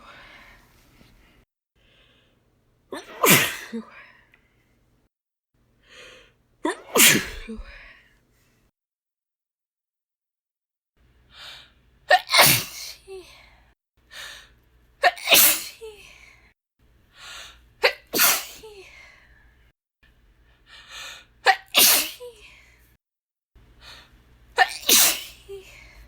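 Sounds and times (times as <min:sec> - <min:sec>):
woman sneezing: 0:02.9 - 0:03.9, 0:06.6 - 0:07.8, 0:12.1 - 0:13.3, 0:15.0 - 0:16.1, 0:17.8 - 0:19.0, 0:21.5 - 0:22.6, 0:24.6 - 0:25.8.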